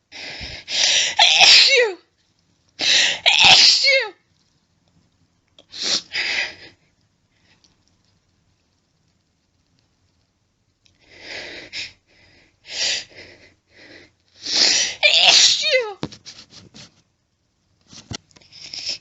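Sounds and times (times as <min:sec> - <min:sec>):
woman sneezing: 0:01.2 - 0:02.0, 0:03.0 - 0:04.1, 0:14.6 - 0:16.0.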